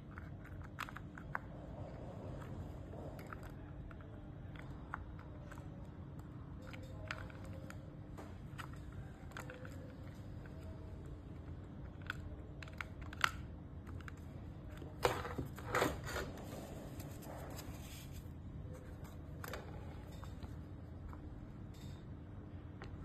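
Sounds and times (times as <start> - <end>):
low steady hum: 0.0 - 23.0.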